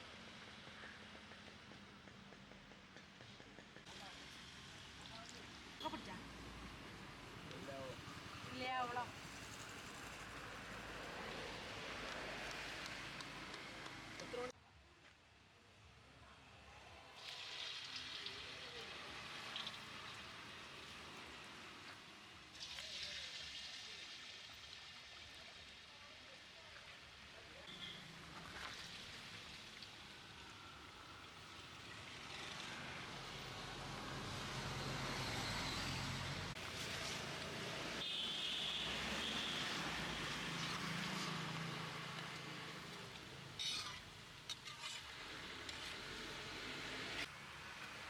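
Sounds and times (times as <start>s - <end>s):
food sizzling in hot oil: 17.1s - 26.5s, 36.6s - 47.2s.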